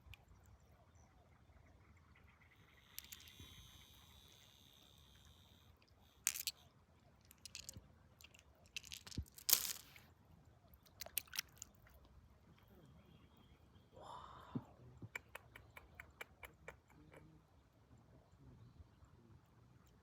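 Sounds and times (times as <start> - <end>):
stones and gravel scraping: 6.3 - 6.6, 7.2 - 10.0, 10.9 - 11.8.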